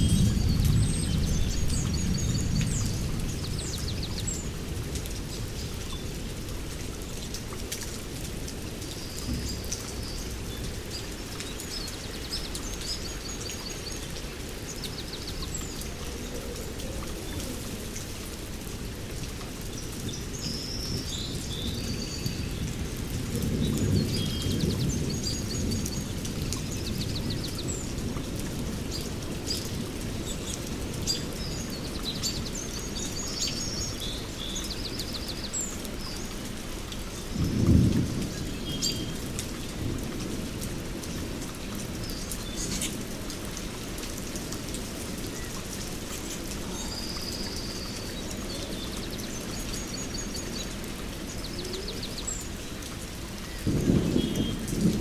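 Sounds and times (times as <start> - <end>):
thunder: 0.0 - 4.1, 53.5 - 55.0
steady rain: 0.0 - 55.0.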